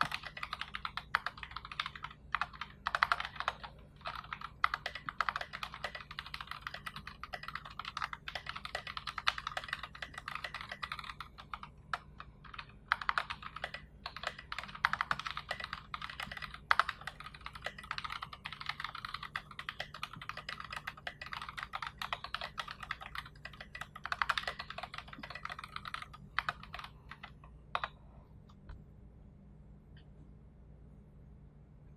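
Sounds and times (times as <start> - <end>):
mechanical keyboard typing: 0.0 - 28.0.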